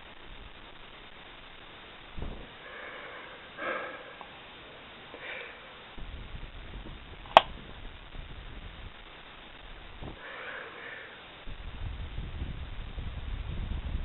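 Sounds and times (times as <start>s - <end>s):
low thump: 2.2s - 2.5s
breathy puffs of breath: 2.6s - 4.4s, 5.1s - 5.8s, 10.1s - 11.3s
sharp click: 7.3s - 7.5s.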